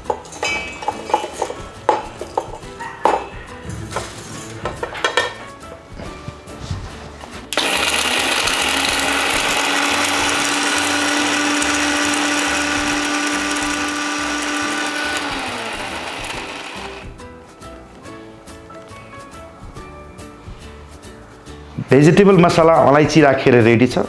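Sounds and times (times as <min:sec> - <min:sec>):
light clinks: 0:00.0 - 0:05.5
electric spice grinder running: 0:07.5 - 0:17.2.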